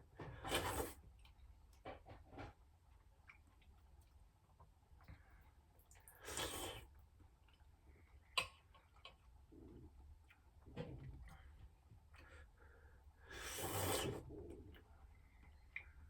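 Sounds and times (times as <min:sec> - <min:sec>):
person slurping soup: 0:00.4 - 0:01.0, 0:06.2 - 0:06.9, 0:13.3 - 0:14.5.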